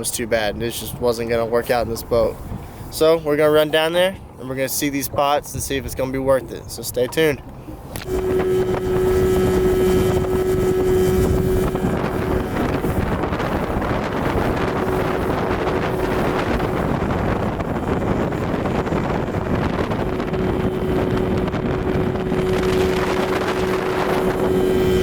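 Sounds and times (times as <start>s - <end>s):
wind and water noise: 0.0s - 25.0s
boat motor humming: 6.6s - 25.0s.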